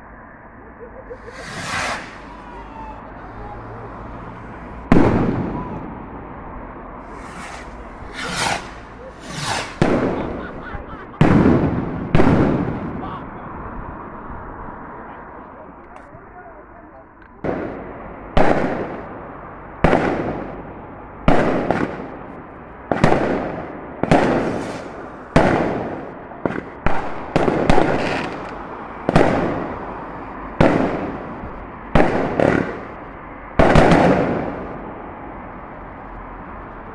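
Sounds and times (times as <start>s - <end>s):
fireworks bangs echoing: 1.1s - 13.1s, 17.4s - 20.7s, 21.3s - 32.9s, 33.6s - 34.8s.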